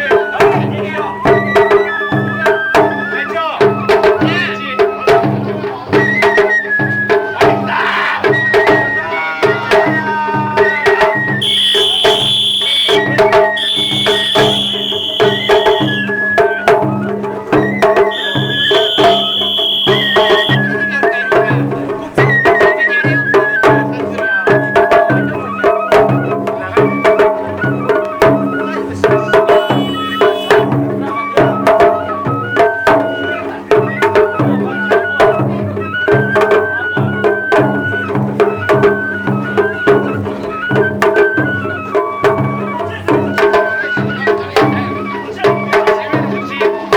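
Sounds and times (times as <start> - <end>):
drums beating steady rhythm: 0.0 - 46.9
flute-like melody: 0.0 - 46.9
shrill high held tone: 11.4 - 16.1, 18.0 - 20.7, 29.4 - 30.7.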